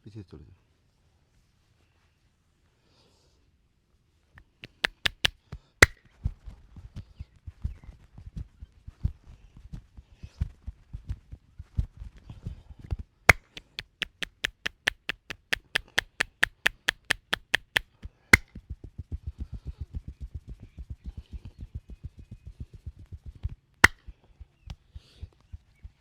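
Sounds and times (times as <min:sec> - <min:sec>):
sharp hand claps: 0:04.6 - 0:06.0, 0:13.3 - 0:17.9.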